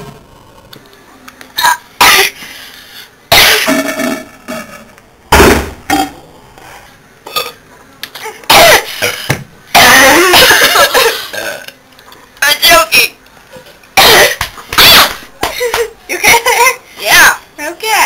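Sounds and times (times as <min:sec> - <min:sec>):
loud burps: 0:03.3 - 0:06.4, 0:07.2 - 0:07.6, 0:11.3 - 0:11.8.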